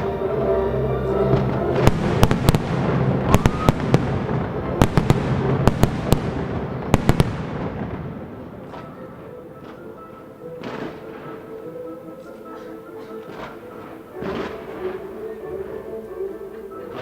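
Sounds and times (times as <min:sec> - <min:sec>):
fireworks bangs: 0:01.1 - 0:12.0, 0:13.1 - 0:15.8.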